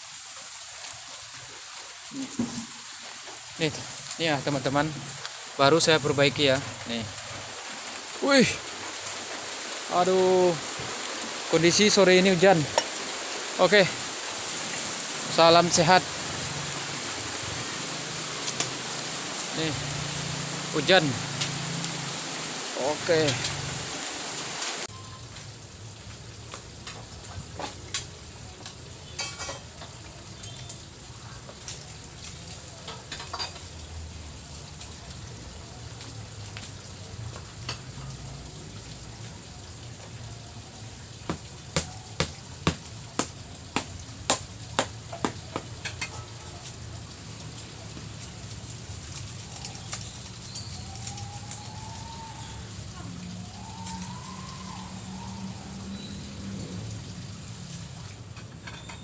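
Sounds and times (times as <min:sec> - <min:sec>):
rain hissing: 0:00.0 - 0:29.1, 0:38.5 - 0:58.3.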